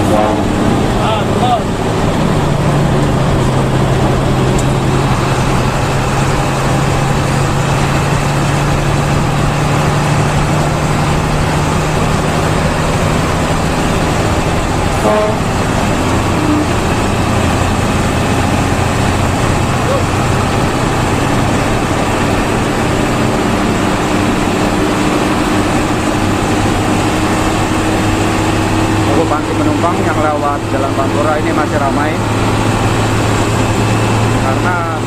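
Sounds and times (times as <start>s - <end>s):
high-pitched toot: 0.0s - 0.6s, 15.0s - 15.5s
bus engine and road noise: 0.0s - 35.0s.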